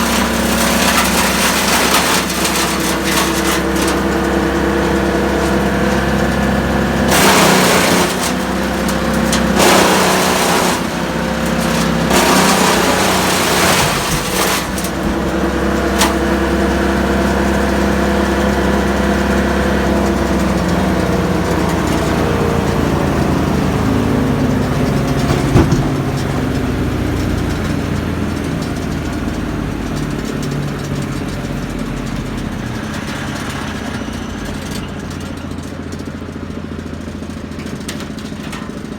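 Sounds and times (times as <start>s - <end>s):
engine running: 0.0s - 38.9s
loud bursts of noise: 6.9s - 16.2s.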